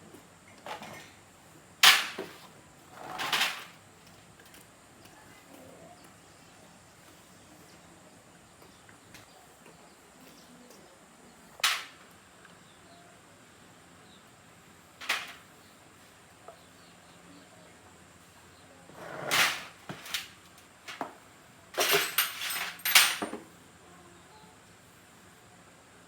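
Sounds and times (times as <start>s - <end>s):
low background noise: 0.0s - 26.0s.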